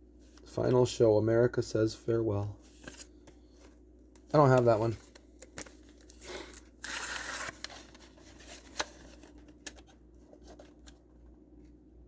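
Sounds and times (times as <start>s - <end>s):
packaging tearing and rustling: 5.4s - 10.9s.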